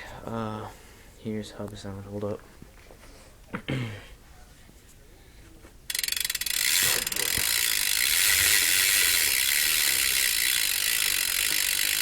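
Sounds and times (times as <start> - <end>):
bike hub freewheeling ratcheting buzz: 5.9 - 12.0.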